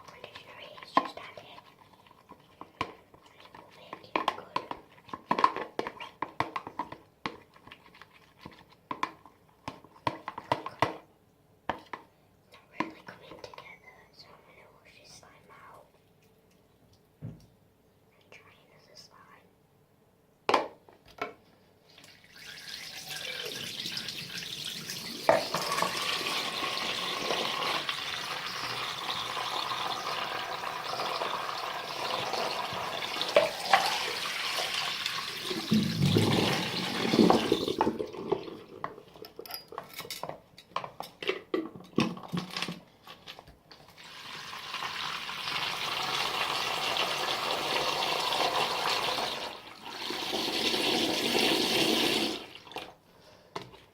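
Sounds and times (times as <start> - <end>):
water running from a tap: 22.0 - 38.0, 44.0 - 52.8.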